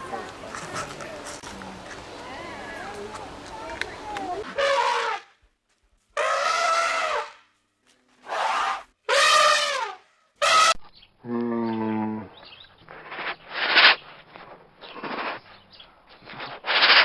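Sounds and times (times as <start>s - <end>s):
lower steady animal call: 6.2s - 7.4s, 8.2s - 17.0s
high-pitched animal cries: 8.3s - 10.8s.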